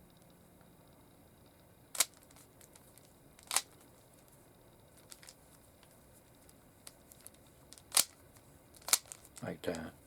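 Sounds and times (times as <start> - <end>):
plastic cube clacking: 2.0 - 3.8, 6.8 - 8.2, 8.8 - 9.4.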